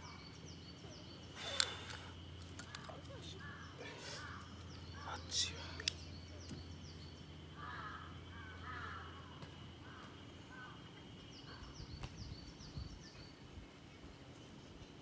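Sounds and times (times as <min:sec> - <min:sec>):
crow cawing: 0:03.3 - 0:05.2, 0:07.5 - 0:10.8.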